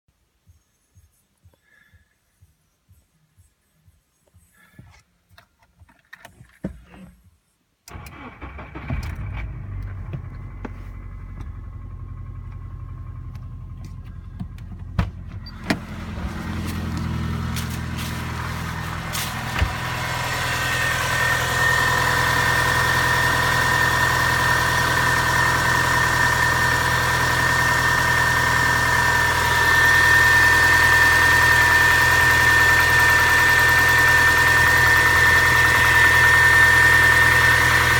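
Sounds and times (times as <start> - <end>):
car engine idling with knock: 7.9 - 37.9.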